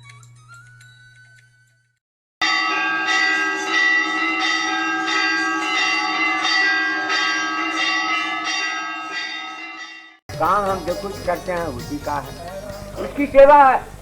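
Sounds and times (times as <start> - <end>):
bells ringing: 2.4 - 14.0.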